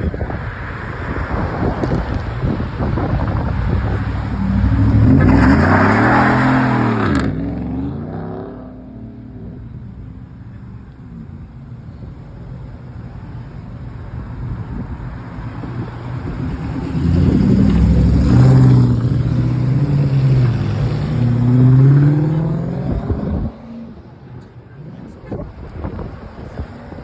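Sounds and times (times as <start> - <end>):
car engine revving: 1.8 - 9.8, 15.4 - 24.1.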